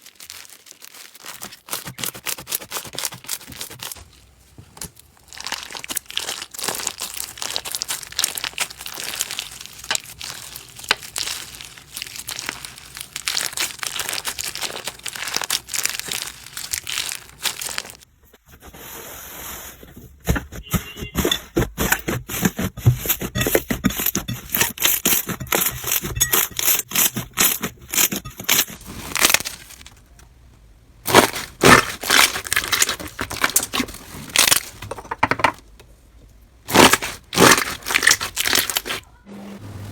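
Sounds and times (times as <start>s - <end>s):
slime crackling and popping: 0.0s - 4.1s, 4.8s - 18.1s, 31.0s - 34.6s, 36.7s - 39.0s.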